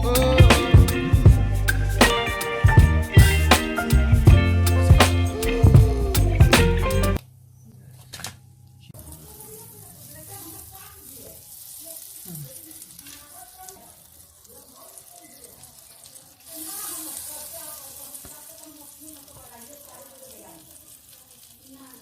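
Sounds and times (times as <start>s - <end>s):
faint voices: 0.0s - 7.2s
food sizzling in a frying pan: 9.0s - 22.0s.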